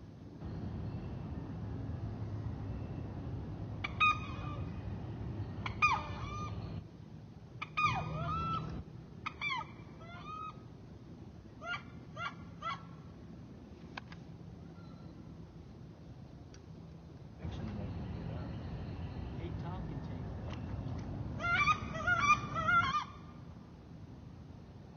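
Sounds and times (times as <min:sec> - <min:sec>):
waterfowl honking: 0:03.8 - 0:04.8, 0:05.6 - 0:06.8, 0:21.4 - 0:23.3.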